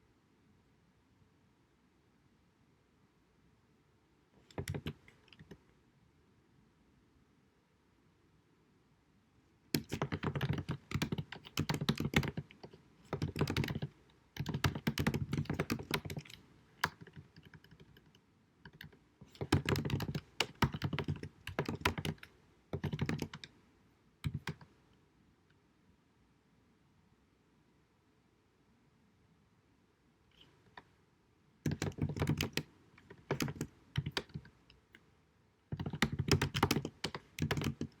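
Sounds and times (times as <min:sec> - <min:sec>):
typing on computer keyboard: 0:04.4 - 0:05.6, 0:09.8 - 0:23.5, 0:24.2 - 0:24.7, 0:31.7 - 0:34.6, 0:35.7 - 0:38.0.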